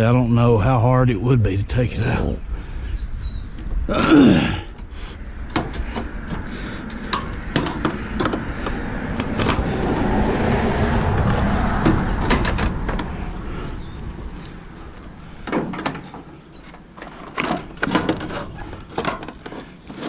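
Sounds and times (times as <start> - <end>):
metal clicks and knocks: 4.7 - 10.1, 11.2 - 13.2, 15.0 - 20.0
metal creaking scrape: 4.7 - 20.0
rustling scrape: 16.0 - 20.0.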